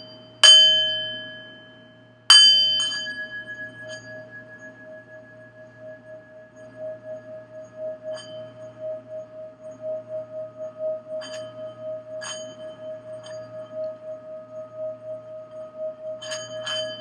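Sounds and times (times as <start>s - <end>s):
light singing bowl strikes: 0.0s - 5.5s
singing bowl ringing tone: 0.0s - 17.0s.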